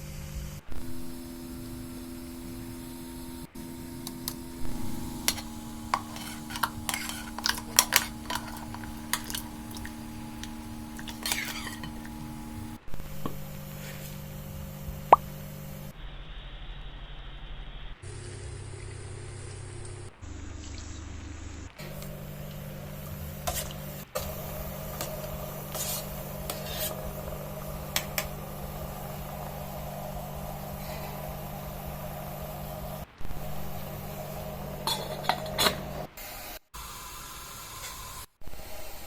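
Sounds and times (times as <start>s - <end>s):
steady hum: 0.0s - 17.3s, 18.0s - 36.2s
pieces dropped into a pot: 4.1s - 12.8s.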